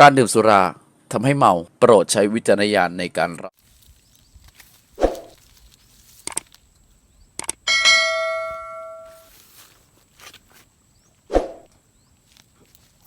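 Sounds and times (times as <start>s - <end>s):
metallic bell ring: 7.7s - 9.3s.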